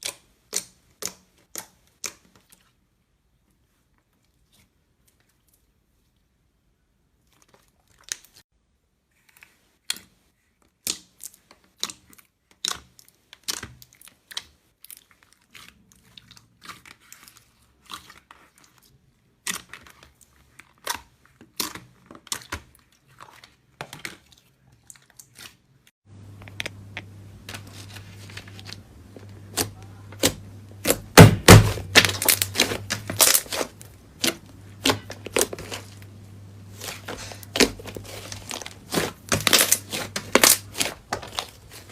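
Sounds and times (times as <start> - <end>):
low steady hum: 26.1 - 41.9.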